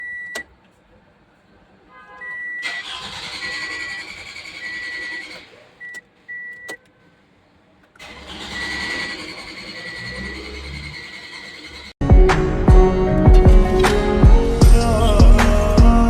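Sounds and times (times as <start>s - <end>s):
dashboard warning chime beeping: 0.0s - 0.5s, 2.2s - 2.8s, 4.6s - 6.9s, 8.2s - 11.1s
starter cranking engine: 2.6s - 5.7s, 8.0s - 12.0s.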